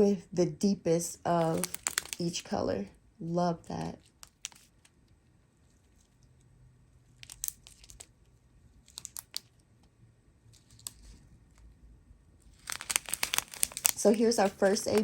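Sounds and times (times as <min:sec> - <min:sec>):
plastic bags crinkling: 0:01.3 - 0:02.5, 0:04.0 - 0:04.9, 0:07.2 - 0:08.2, 0:08.8 - 0:09.5, 0:12.5 - 0:15.0.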